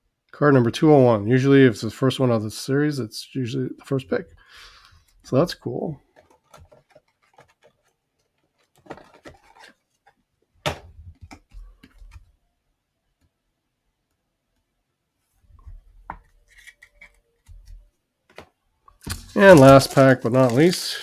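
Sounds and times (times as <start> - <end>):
cards clicking and rustling: 6.1 - 10.2, 16.2 - 21.0.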